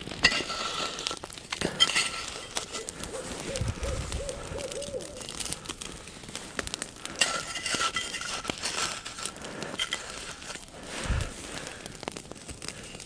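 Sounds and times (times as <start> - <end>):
crackling clicks: 0.0 - 13.0
owl hooting: 2.8 - 5.4.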